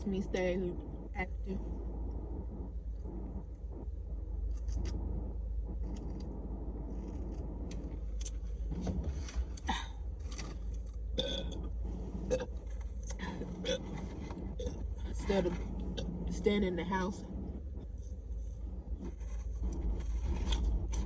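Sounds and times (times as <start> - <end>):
low steady rumble: 0.0 - 21.0
person burping: 11.2 - 11.6, 12.3 - 12.5.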